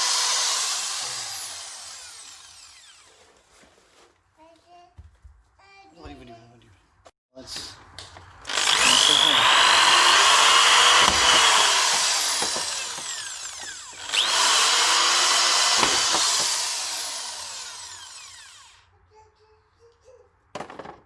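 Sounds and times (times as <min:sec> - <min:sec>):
power drill boring holes: 0:00.0 - 0:03.2, 0:08.4 - 0:18.9.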